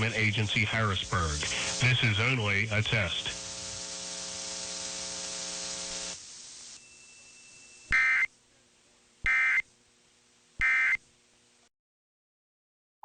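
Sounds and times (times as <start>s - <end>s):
buzzy warbling data bursts: 7.8s - 8.3s, 9.3s - 9.6s.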